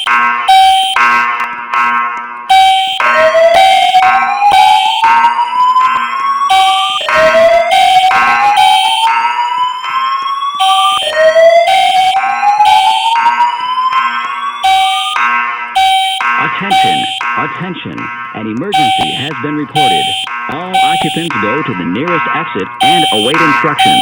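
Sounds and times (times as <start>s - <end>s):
whooping alarm tone: 0.0s - 1.1s, 2.5s - 24.0s
pulsing horn tone: 2.5s - 5.2s, 15.8s - 21.8s, 22.4s - 24.0s
voice announcements: 5.9s - 9.1s, 14.7s - 15.2s, 15.8s - 24.0s.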